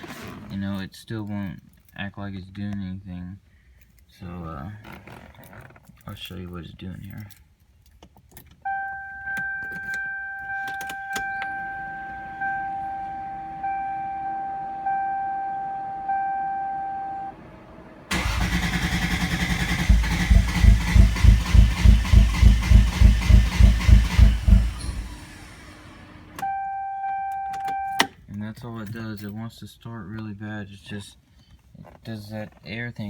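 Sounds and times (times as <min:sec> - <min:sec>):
engine cranking on starter: 0:17.3 - 0:26.4.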